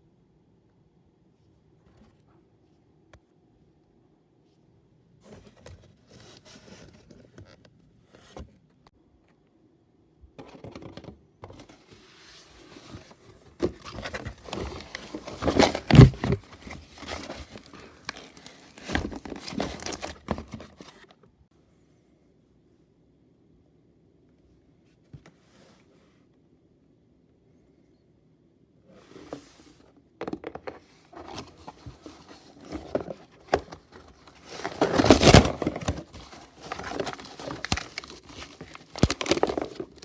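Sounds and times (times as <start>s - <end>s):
slime crinkling and squishing: 14.3s - 20.3s, 34.1s - 40.0s.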